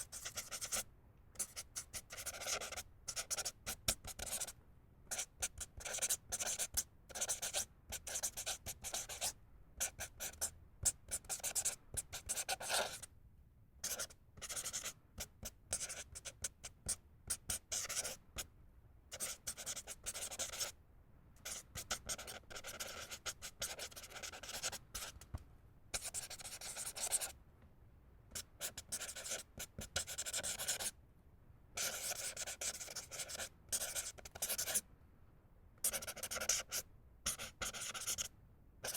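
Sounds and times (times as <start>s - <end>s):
marker squeaking on paper: 1.4s - 4.5s, 5.1s - 13.1s, 13.8s - 18.2s, 19.1s - 20.7s, 21.4s - 25.3s, 26.0s - 27.3s, 28.6s - 30.9s, 31.8s - 34.8s, 35.8s - 38.9s.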